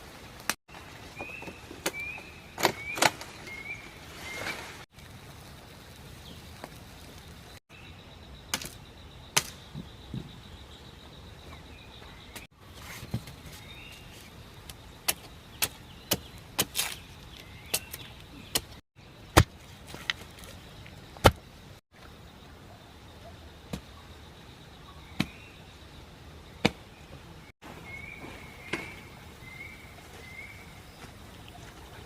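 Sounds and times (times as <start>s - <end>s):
axe chopping wood: 17.7s - 19.6s, 26.6s - 26.8s
faint bird chirps: 20.4s - 32.0s.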